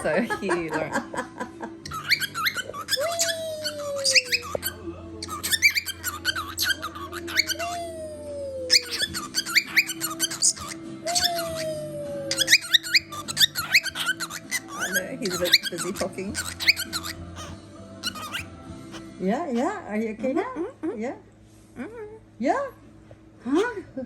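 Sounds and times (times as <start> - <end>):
bird chirping and squeaking: 1.8 - 8.0, 8.7 - 20.7, 23.5 - 23.8
bird mimicking chicken: 1.8 - 8.0, 8.7 - 20.3.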